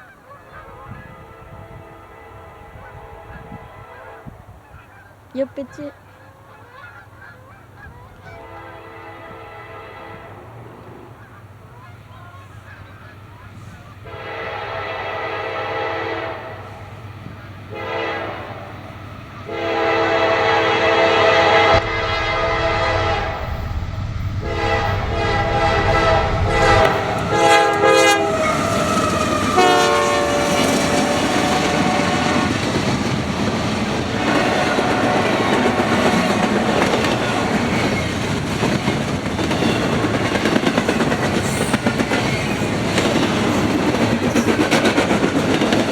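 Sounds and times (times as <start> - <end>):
train rumbling past: 0.0 - 45.9
train horn blasts: 0.5 - 4.7, 8.2 - 12.6, 13.6 - 33.2, 34.1 - 38.1
wheels clacking over rail joints: 18.7 - 45.9.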